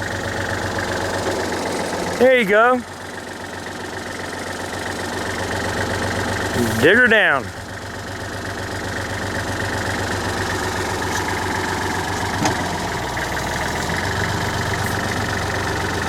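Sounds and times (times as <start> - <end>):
diesel engine running: 0.0 - 16.0
bucket digging: 10.8 - 11.6.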